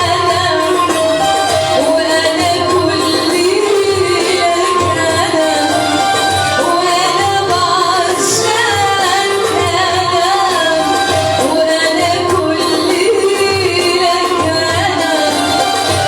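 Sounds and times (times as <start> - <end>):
instrumental backing: 0.0 - 16.0
steady drum beat: 0.0 - 16.0
woman singing love song: 0.0 - 16.0.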